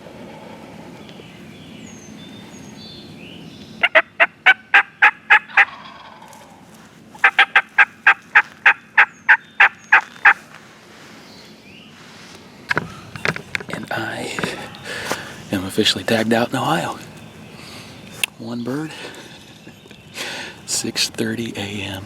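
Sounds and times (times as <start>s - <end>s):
faint songbird chirps: 0.9s - 4.2s, 7.9s - 22.0s
turkey yelping: 3.8s - 10.4s.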